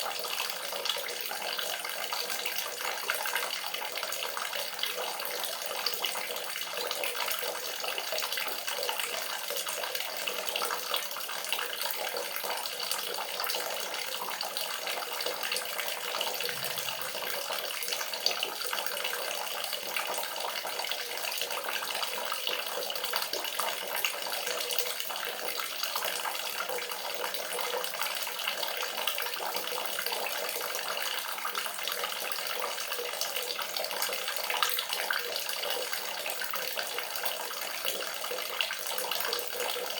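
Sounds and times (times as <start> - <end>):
running water pouring: 15.6 - 19.6.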